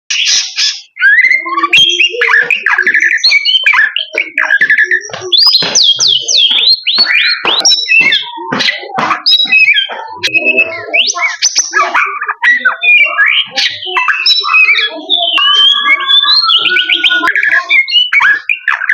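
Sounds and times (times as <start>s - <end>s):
songbird whistles and trills: 0.1s - 18.9s.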